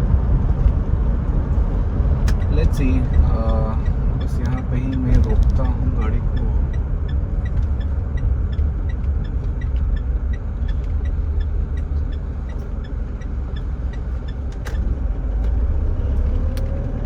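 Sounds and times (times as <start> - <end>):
car engine low drone: 0.0 - 17.0
faint regular ticking: 2.3 - 14.8.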